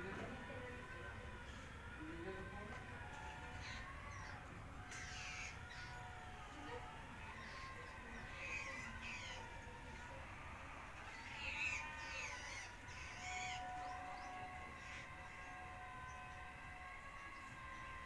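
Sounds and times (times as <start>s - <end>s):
bird calling: 3.6s - 6.2s, 7.3s - 9.8s, 11.0s - 15.1s.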